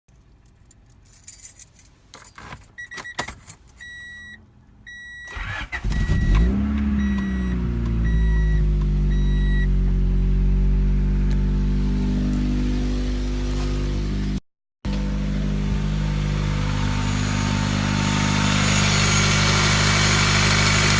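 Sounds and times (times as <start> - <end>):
keys jangling: 0.1 - 3.9
car engine starting and idling: 4.9 - 20.9.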